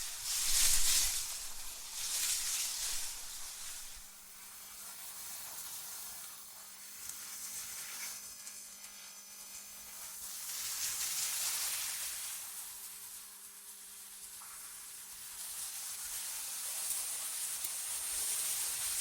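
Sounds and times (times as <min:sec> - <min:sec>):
faint steady hum: 0:00.0 - 0:04.6
synthetic wind hiss: 0:00.0 - 0:04.8.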